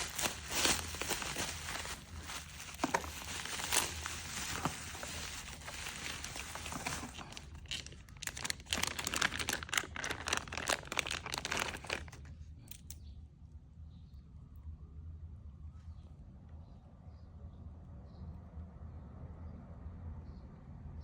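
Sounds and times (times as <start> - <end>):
packaging crinkling: 0.0 - 12.9
quick crackles and clicks: 0.0 - 13.0.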